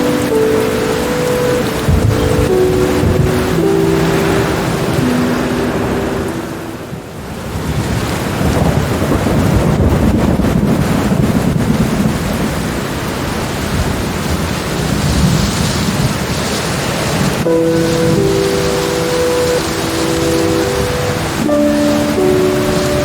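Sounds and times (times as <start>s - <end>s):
steady rain: 0.0s - 23.0s
low rumble of thunder: 1.9s - 4.4s, 7.5s - 23.0s.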